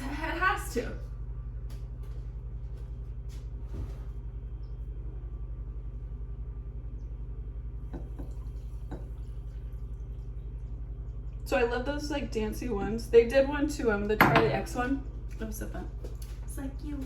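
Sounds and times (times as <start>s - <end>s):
pulsing low hum: 0.8s - 13.6s.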